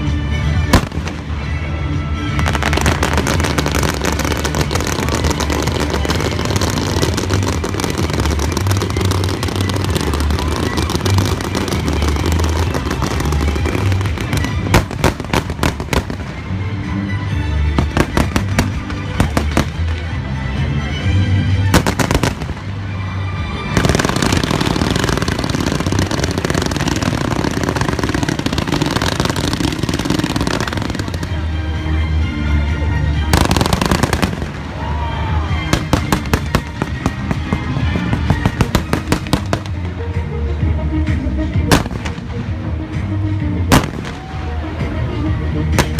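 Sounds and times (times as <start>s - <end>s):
fireworks crackling: 0.0s - 17.0s, 17.6s - 20.3s, 21.5s - 32.1s, 33.1s - 40.3s, 41.5s - 45.9s
music playing: 0.0s - 45.9s
fireworks booming: 23.8s - 31.4s.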